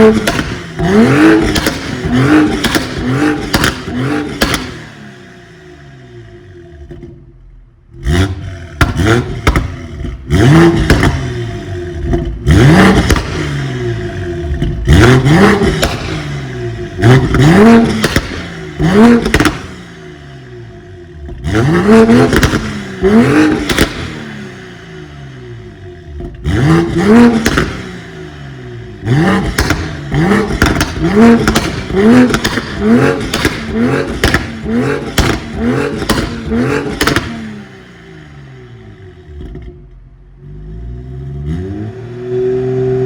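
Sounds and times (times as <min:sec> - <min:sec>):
exhaust pops and crackles: 0:00.0 - 0:05.0, 0:08.8 - 0:19.9, 0:22.0 - 0:24.4, 0:26.2 - 0:28.0, 0:29.1 - 0:37.6
car engine revving: 0:00.0 - 0:43.0.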